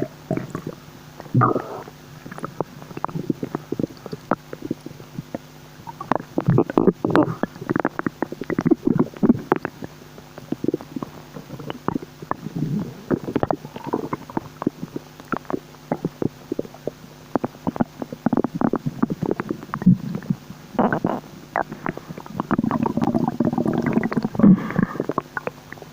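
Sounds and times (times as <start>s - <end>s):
stomach gurgling: 0.0s - 25.9s.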